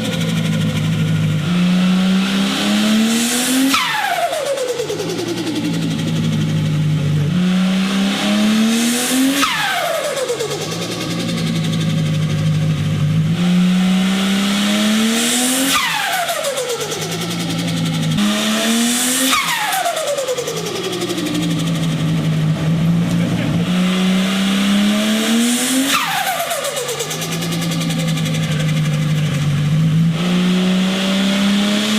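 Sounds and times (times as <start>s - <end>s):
turbocharged car engine revving: 0.0s - 31.9s
turbo whistle and flutter: 3.6s - 6.4s, 9.2s - 12.9s, 15.4s - 22.0s, 25.8s - 29.5s.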